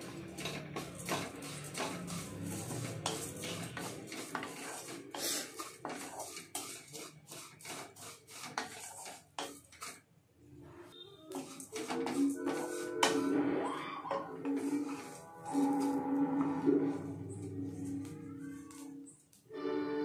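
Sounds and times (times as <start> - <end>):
hard objects clicking and scraping: 0.0 - 10.0, 11.3 - 13.2.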